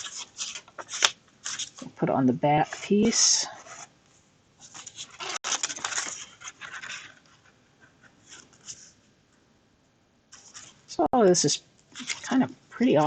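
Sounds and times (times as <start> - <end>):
cardstock rustling and rubbing: 0.0 - 2.0, 2.6 - 3.9, 4.6 - 9.0, 10.4 - 10.9, 12.0 - 13.0.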